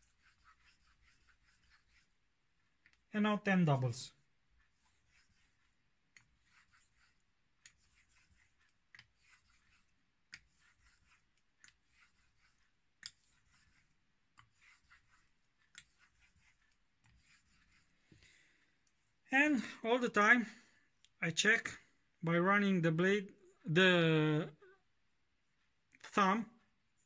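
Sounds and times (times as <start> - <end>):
razor strokes on whetstone: 0.0 - 2.3, 4.6 - 18.1.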